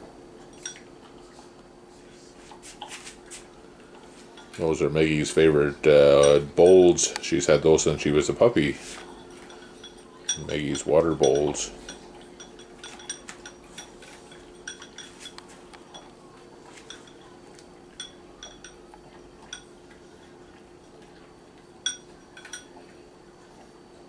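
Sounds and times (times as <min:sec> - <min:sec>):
dog eating from a bowl: 0:00.3 - 0:24.0
light clinks against a bowl: 0:00.4 - 0:00.9, 0:04.3 - 0:05.4, 0:06.1 - 0:07.7, 0:09.0 - 0:20.0, 0:21.6 - 0:23.0.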